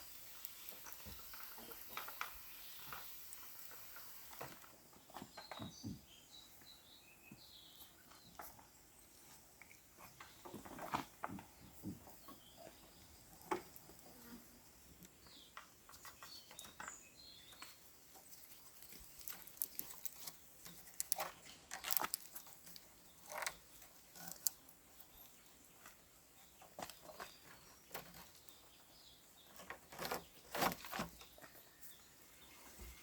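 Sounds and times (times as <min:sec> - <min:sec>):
light clicks and crackles: 0:17.6 - 0:24.7.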